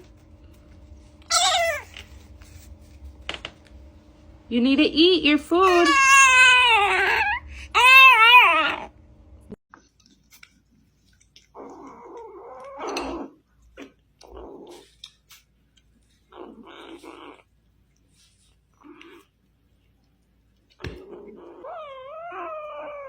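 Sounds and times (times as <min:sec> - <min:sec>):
cat meowing: 0:05.7 - 0:08.9.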